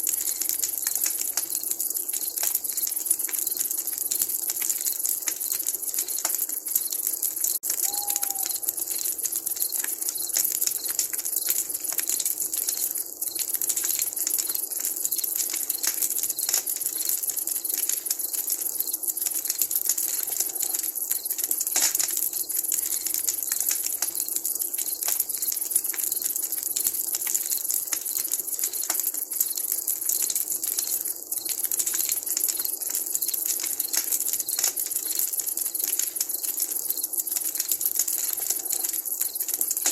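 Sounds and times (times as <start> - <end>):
campfire crackling and popping: 0.0 - 39.9
brief falling call: 7.8 - 8.7.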